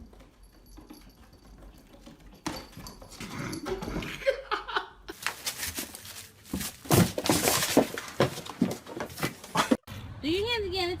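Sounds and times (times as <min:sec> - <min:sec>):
scuffling: 0:05.1 - 0:09.8.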